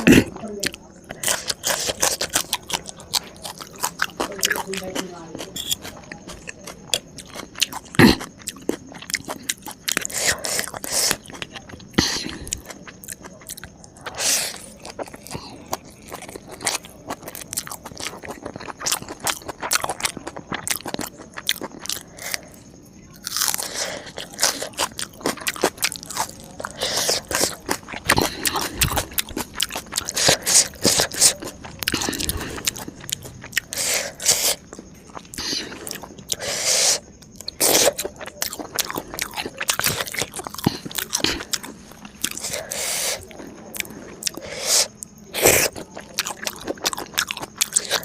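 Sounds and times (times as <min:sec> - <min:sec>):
crisp food crunching: 0:00.0 - 0:48.0.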